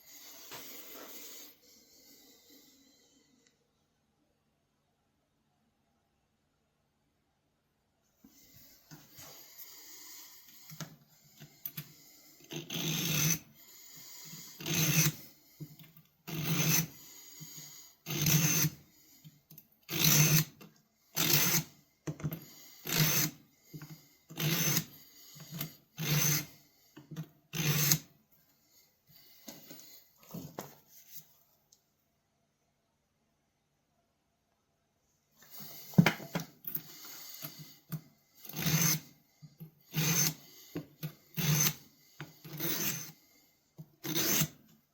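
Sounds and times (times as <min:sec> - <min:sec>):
knife blade scraping on sharpener: 0:14.6 - 0:15.2, 0:16.3 - 0:16.9, 0:42.5 - 0:43.1, 0:44.0 - 0:44.6.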